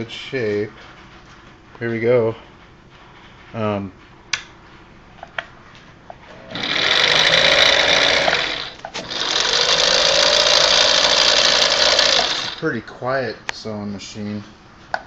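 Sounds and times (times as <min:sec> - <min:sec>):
sewing machine running: 0:06.4 - 0:12.7.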